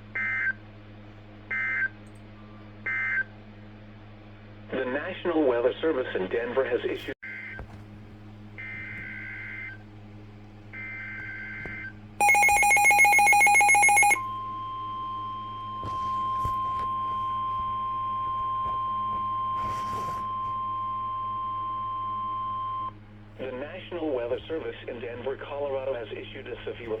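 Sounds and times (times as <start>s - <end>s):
steady warning alarm tone: 10.7s - 23.0s
pulsing electronic alarm: 10.8s - 23.0s
data bursts: 12.2s - 14.2s.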